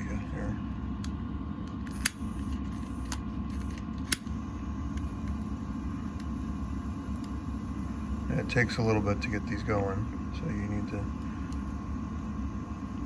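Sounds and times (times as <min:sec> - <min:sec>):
steady low rumble: 0:00.0 - 0:13.0
lighter clicking: 0:01.0 - 0:02.3, 0:07.1 - 0:07.4.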